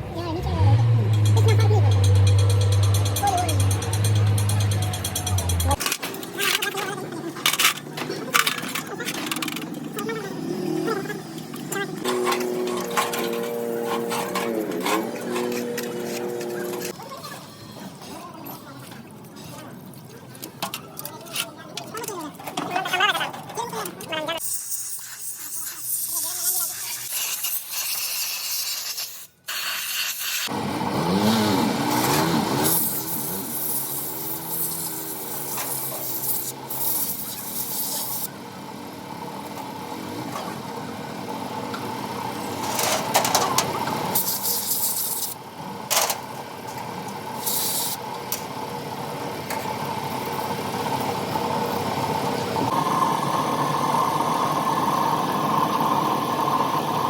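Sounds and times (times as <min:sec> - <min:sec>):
engine revving and running: 0:00.0 - 0:05.9, 0:09.3 - 0:17.0, 0:30.5 - 0:57.0.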